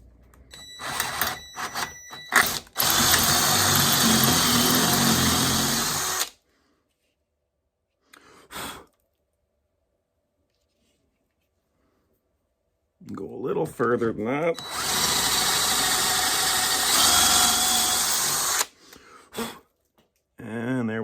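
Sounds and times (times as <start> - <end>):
electric drill drilling: 0.8 - 6.3, 14.6 - 18.7.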